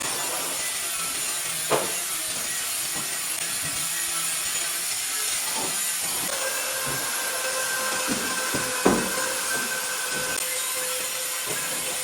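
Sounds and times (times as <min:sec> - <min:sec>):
hissing carpentry work on wood: 0:00.0 - 0:12.0
sharp knocks: 0:08.1 - 0:09.2.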